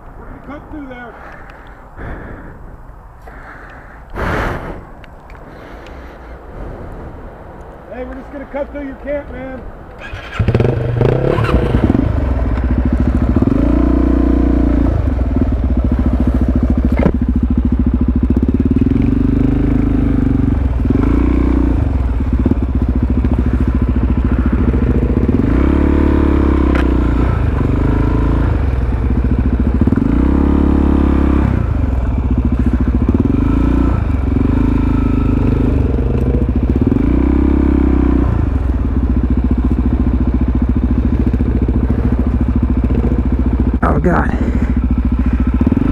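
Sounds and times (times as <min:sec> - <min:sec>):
motorcycle engine revving: 0:10.0 - 0:45.9.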